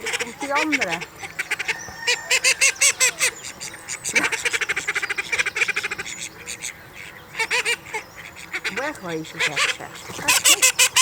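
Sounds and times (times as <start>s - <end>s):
ducks quacking: 0.0s - 11.0s.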